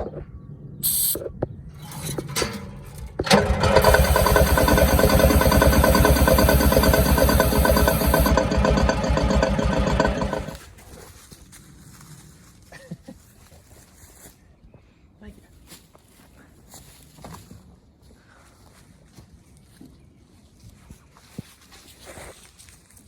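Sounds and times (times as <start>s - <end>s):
diesel engine cranking on starter: 0.8s - 1.2s, 1.8s - 10.6s.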